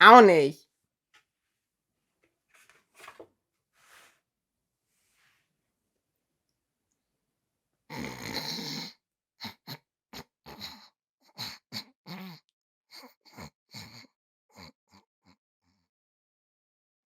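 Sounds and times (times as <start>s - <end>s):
person snoring and snorting: 7.9s - 15.4s.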